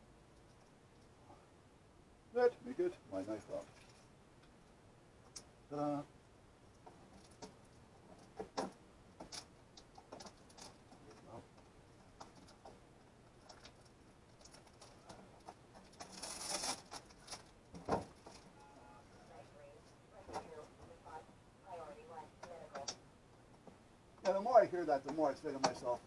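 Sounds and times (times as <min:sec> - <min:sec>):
scraping rustle: 0:09.2 - 0:18.6.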